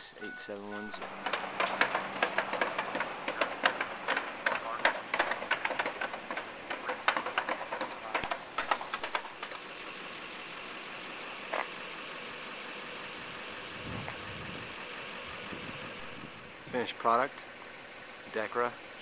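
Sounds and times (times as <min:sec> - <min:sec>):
light tapping and clicking: 0:00.9 - 0:09.6.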